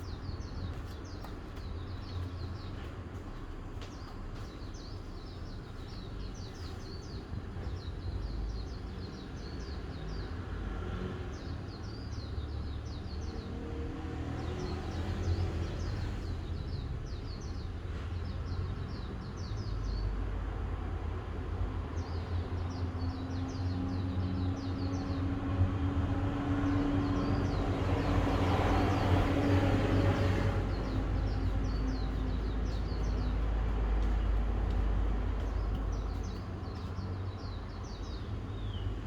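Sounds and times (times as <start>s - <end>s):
songbirds chirping: 0.0s - 39.0s
steady low rumble: 30.1s - 38.2s.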